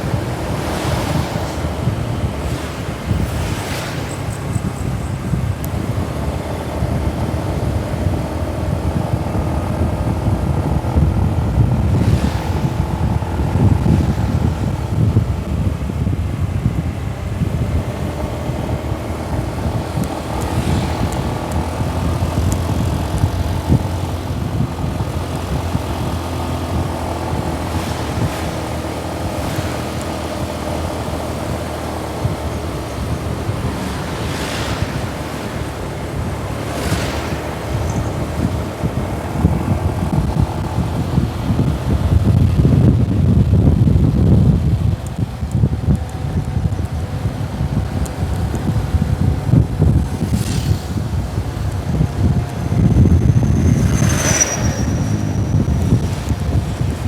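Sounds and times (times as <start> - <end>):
vehicle engine running: 0.0 - 57.0
wind rumble on microphone: 0.0 - 57.0.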